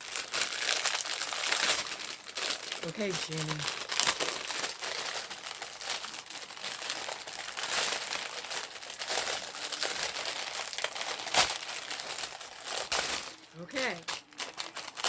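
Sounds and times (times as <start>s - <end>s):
packaging crinkling and rustling: 0.0s - 15.0s.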